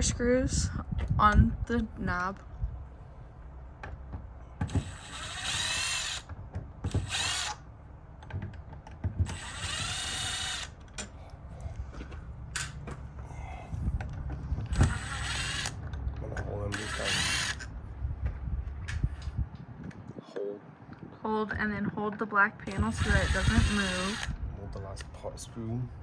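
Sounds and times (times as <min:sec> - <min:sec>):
screw gun motor whine: 0:04.6 - 0:07.7, 0:09.2 - 0:11.1, 0:14.7 - 0:15.8, 0:16.7 - 0:17.7, 0:22.7 - 0:24.4
small clicks and knocks: 0:08.2 - 0:09.4.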